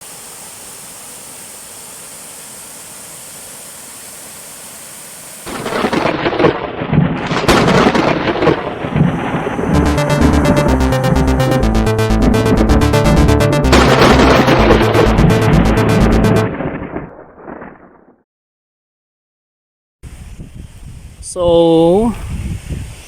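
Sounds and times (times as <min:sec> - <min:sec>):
rain hiss: 0:00.0 - 0:09.7, 0:20.0 - 0:23.0
thunder crack and rumbles: 0:05.5 - 0:10.7, 0:13.6 - 0:18.2
electronic music with steady beat: 0:09.6 - 0:16.5.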